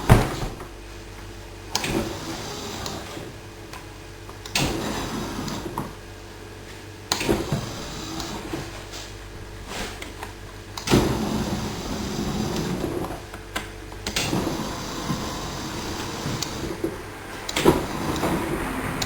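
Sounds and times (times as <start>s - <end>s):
electric motors starting and stopping: 7.1s - 9.0s, 10.8s - 13.3s, 14.0s - 19.0s.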